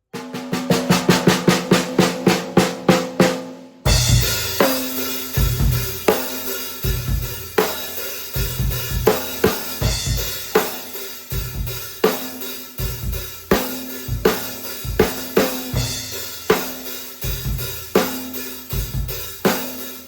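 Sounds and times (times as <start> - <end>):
bass drum thumps: 3.9 - 4.6, 8.4 - 10.6
hi-hat and cymbal strokes: 3.9 - 20.0.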